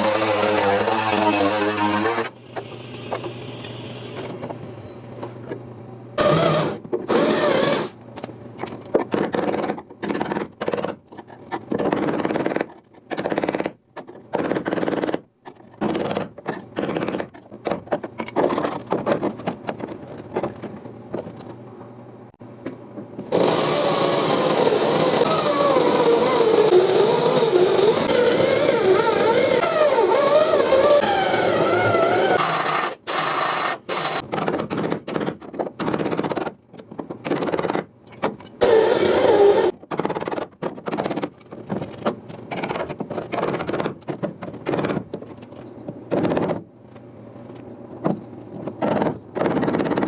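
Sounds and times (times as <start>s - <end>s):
power tool cutting sheet metal: 0.0s - 2.4s, 23.3s - 34.3s, 38.6s - 39.8s.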